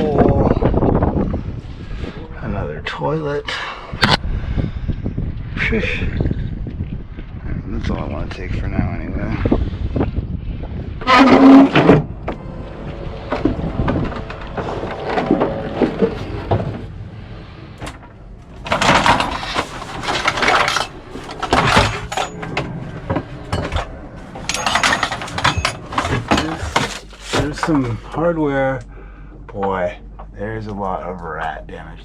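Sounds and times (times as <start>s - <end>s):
gear clattering and knocking: 10.6s - 28.2s
hardware rattling: 17.8s - 28.0s.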